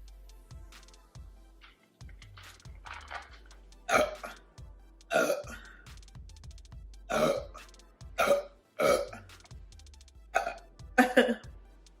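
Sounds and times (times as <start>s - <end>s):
girl burping: 3.9s - 4.4s, 5.1s - 5.5s, 7.1s - 7.5s.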